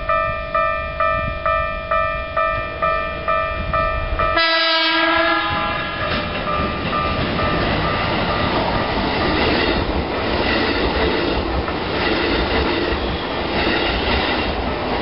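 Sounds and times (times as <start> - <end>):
level-crossing warning bell: 0.0 - 9.9
passing train: 0.0 - 15.0
train horn: 4.3 - 6.1.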